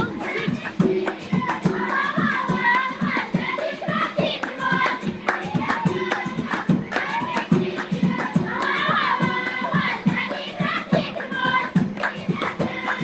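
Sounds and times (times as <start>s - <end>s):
hand-clapping: 0.0s - 13.0s
high voices singing folk song: 0.0s - 13.0s.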